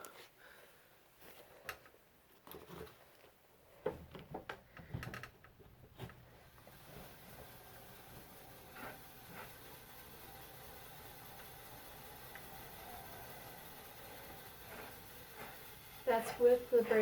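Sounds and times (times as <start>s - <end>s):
soft rubbing hiss: 6.0s - 17.0s
felt brake dragging: 6.2s - 10.5s.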